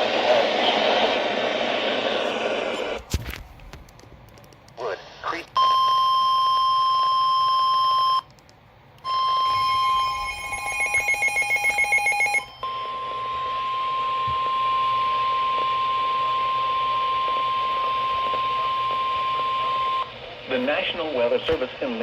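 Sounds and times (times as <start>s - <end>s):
loud single-pitch alarm tone: 9.0s - 20.1s.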